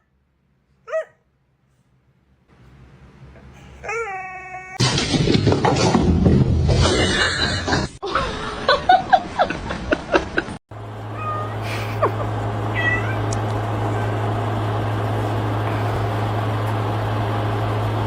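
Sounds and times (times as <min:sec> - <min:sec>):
steady low hum: 0:04.8 - 0:18.0
cats meowing: 0:11.2 - 0:11.6, 0:12.7 - 0:13.3.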